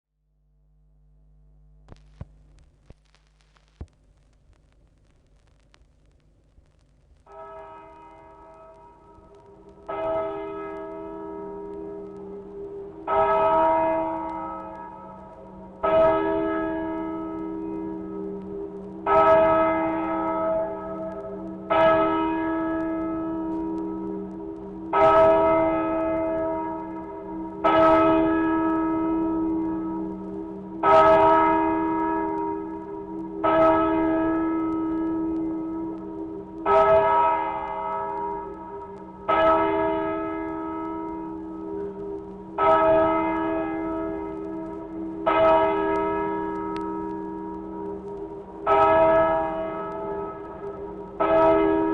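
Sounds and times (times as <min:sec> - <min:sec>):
steady low hum: 0:00.2 - 0:07.3
church bell tolling: 0:07.3 - 0:51.9.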